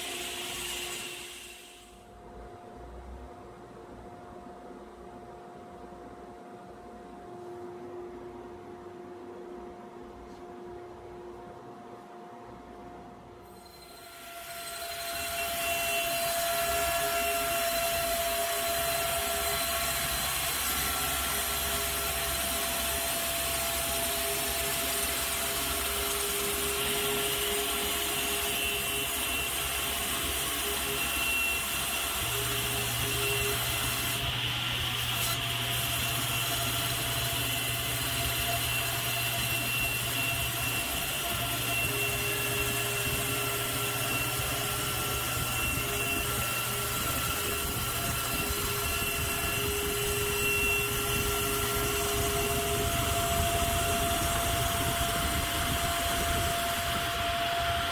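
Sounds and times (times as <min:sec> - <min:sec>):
table saw cutting wood: 0:00.0 - 0:01.9, 0:13.6 - 0:57.9.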